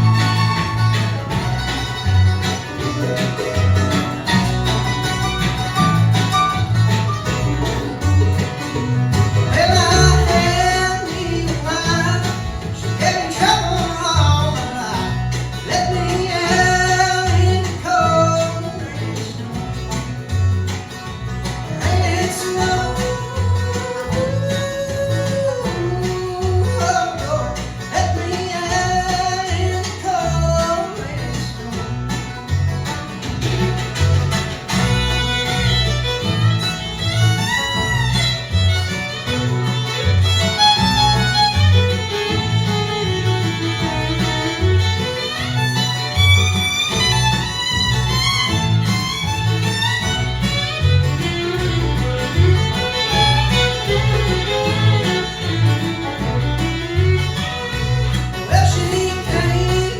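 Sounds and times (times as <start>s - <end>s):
guitar and plucked strings: 0.0s - 59.9s
pulsing bass line: 0.0s - 59.9s
person singing: 9.4s - 19.5s, 21.7s - 32.0s, 58.4s - 59.9s.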